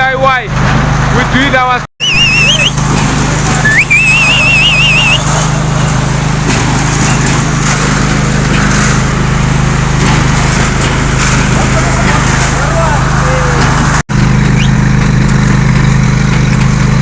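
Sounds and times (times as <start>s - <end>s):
high wavering whistle tone: 2.0s - 2.8s, 3.7s - 5.2s
concrete mixer motor humming: 2.0s - 17.0s.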